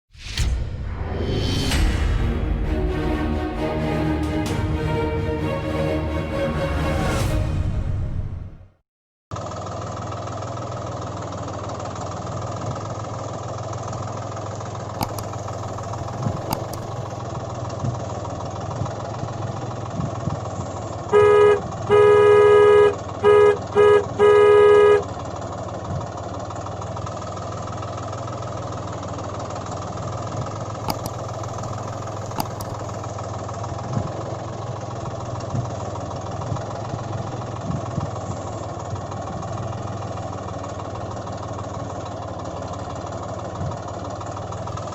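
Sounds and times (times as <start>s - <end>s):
engine running: 0.1s - 8.4s, 9.4s - 44.9s
vehicle horn blasts: 21.1s - 25.2s.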